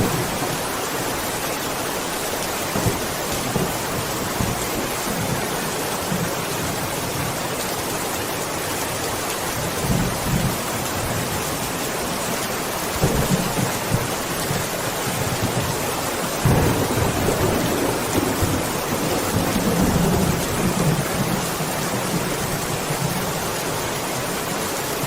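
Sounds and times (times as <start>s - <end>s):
thunder rolling: 0.0s - 0.7s, 16.4s - 22.2s
steady rain: 0.0s - 25.0s.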